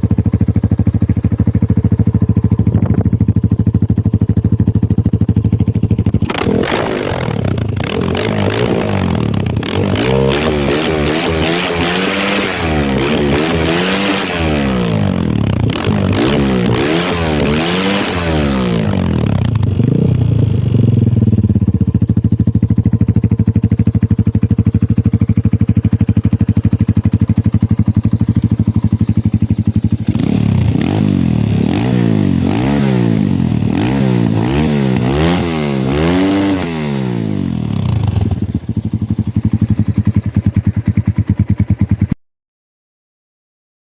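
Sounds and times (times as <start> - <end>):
dirt bike engine revving: 6.0 - 21.3, 25.1 - 41.8.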